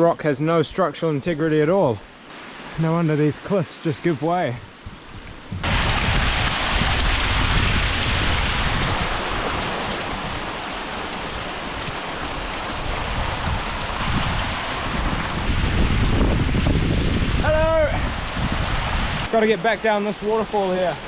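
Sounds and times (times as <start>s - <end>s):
waterfall splashing over rocks: 2.3s - 21.0s
wind buffeting microphone: 4.6s - 19.3s.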